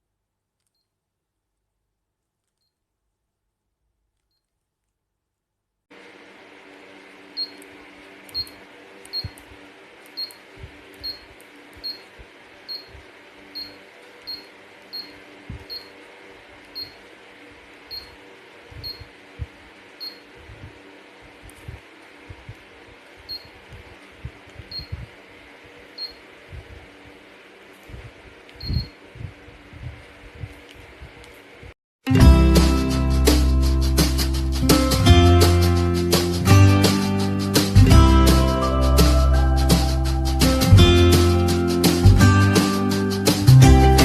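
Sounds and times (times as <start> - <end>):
small fan humming: 5.9 - 31.8.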